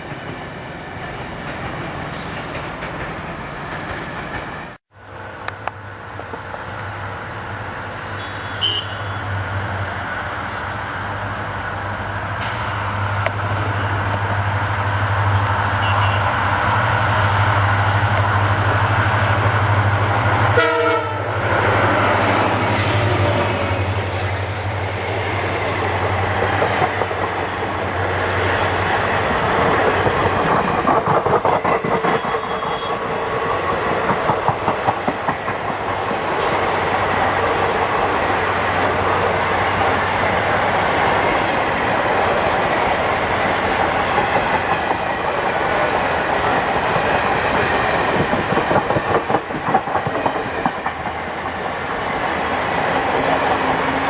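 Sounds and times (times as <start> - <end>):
train wheels rumbling and clattering: 0.0 - 4.8, 21.3 - 54.0
train horn blast: 20.6 - 21.3.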